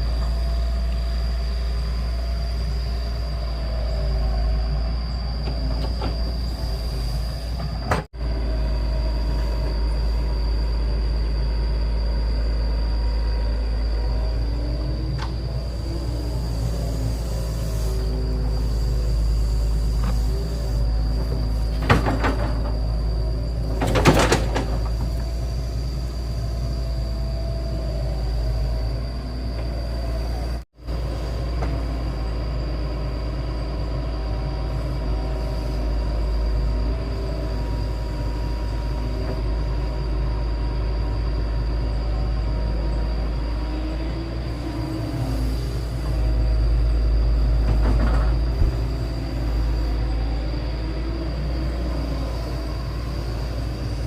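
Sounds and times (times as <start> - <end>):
excavator diesel engine rumbling: 0.0 - 54.0
hydraulic whine: 0.0 - 54.0.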